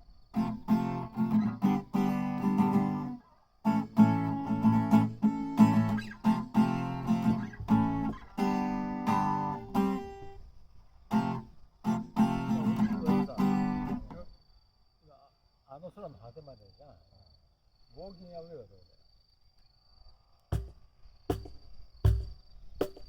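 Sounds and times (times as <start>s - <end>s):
acoustic guitar strumming chords: 0.3s - 10.4s, 11.1s - 14.3s.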